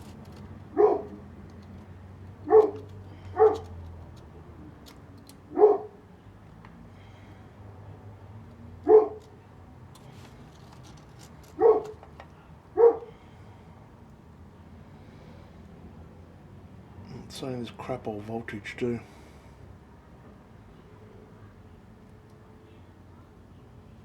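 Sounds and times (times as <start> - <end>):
dog barking: 0.7 - 1.2, 2.4 - 3.7, 5.5 - 6.0, 8.8 - 9.3, 11.6 - 12.0, 12.8 - 13.1.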